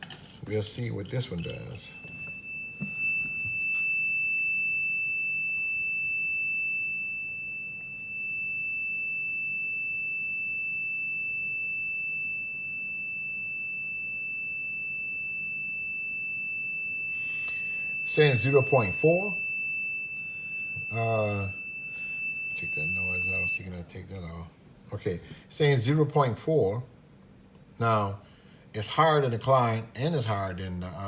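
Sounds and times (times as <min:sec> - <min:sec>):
multimeter continuity beep: 0:01.4 - 0:23.8.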